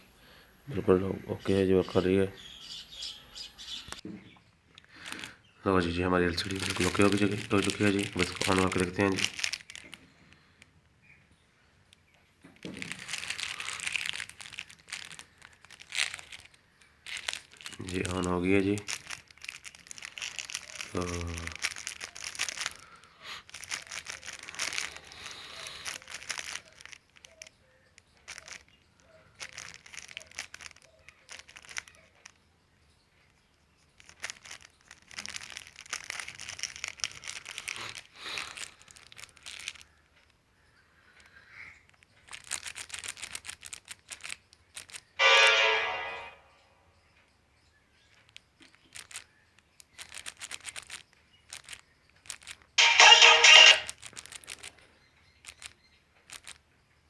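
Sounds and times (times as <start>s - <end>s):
crinkling handling noise: 2.7s - 40.4s, 41.1s - 46.5s, 48.1s - 56.6s
short loud pitched sound: 45.2s - 46.6s.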